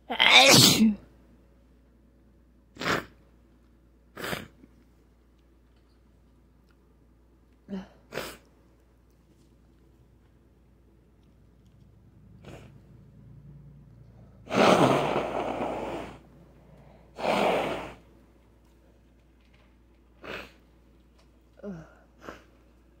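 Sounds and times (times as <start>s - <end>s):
person sneezing: 0.1s - 1.0s
short breaths: 14.8s - 17.8s.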